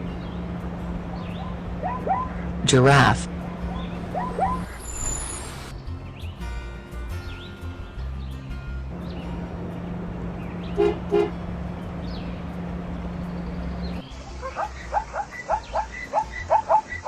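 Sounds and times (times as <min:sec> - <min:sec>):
horn toots: 0:10.6 - 0:11.4.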